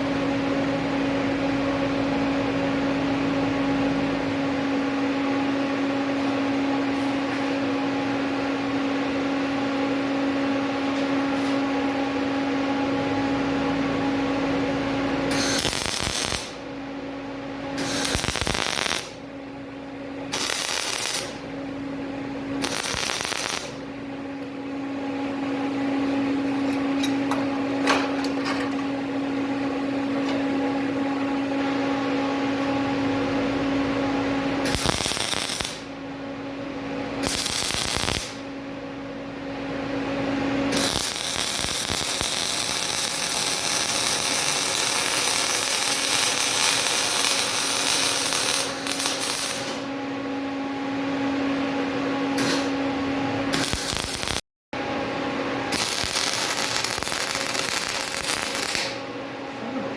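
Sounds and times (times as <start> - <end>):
welding machine hum: 0.0 - 59.7
crackling welding arc: 15.3 - 16.6, 17.8 - 19.2, 20.3 - 21.4, 22.6 - 23.8, 34.6 - 35.9, 37.2 - 38.5, 40.7 - 49.9, 52.4 - 52.7, 53.5 - 54.4, 55.7 - 59.1.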